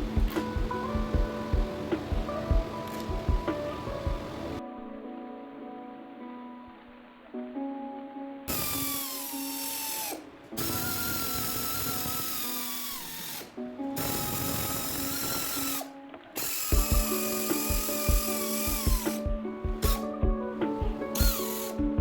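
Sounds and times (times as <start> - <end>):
power tool running: 8.5 - 19.2, 21.2 - 21.8.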